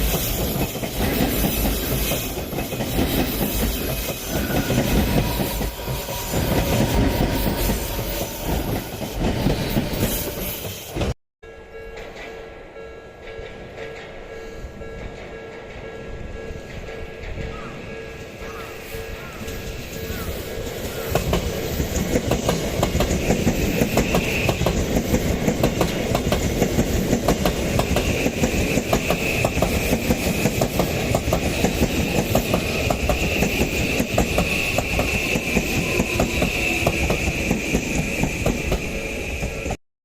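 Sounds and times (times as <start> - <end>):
wheels clacking over rail joints: 0.0 - 11.2, 19.2 - 39.7
electric train passing: 0.0 - 39.8.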